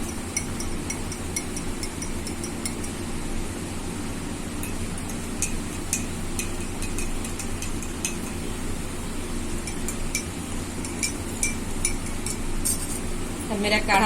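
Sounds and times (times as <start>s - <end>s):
metal spoon clinking cups: 0.0s - 3.0s, 4.6s - 8.5s, 9.6s - 13.1s
steady low hum: 0.0s - 14.0s.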